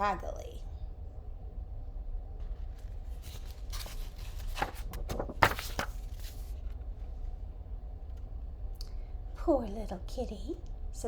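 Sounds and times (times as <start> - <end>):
steady low hum: 0.0 - 11.0
paper page turning: 2.4 - 6.8.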